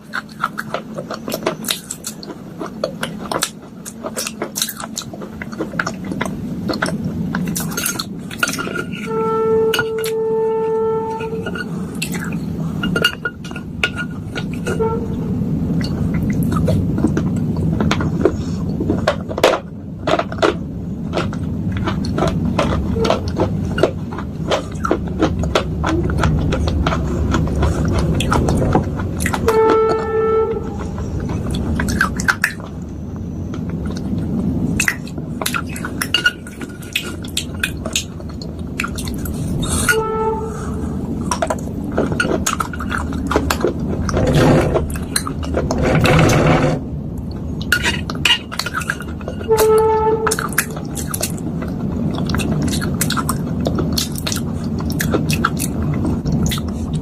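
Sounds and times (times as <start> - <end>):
horn-like tone: 9.0 - 11.7, 14.6 - 15.5, 29.4 - 31.2, 39.9 - 40.8, 49.4 - 50.5.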